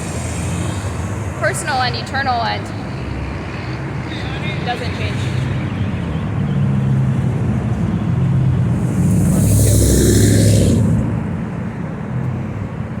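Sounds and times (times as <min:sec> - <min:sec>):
street traffic rumbling: 0:00.0 - 0:13.0
vehicle passing close by: 0:08.3 - 0:11.7.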